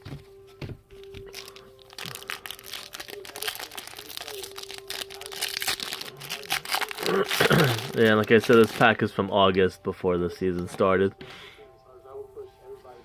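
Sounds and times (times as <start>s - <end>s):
foil wrapper crinkling: 1.0s - 9.1s.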